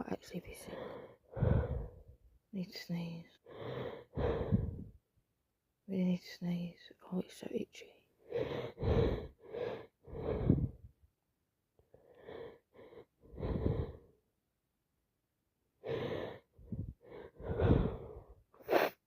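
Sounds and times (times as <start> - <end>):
person breathing heavily before sneeze: 17.4 - 19.0.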